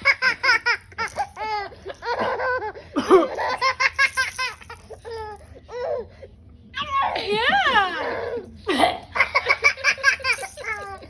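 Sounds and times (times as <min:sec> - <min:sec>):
baby giggling: 0:00.0 - 0:06.0.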